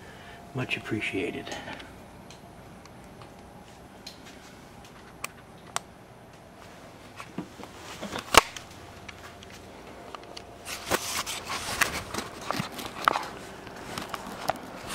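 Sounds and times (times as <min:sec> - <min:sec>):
rustling handling noise: 0:06.4 - 0:14.9.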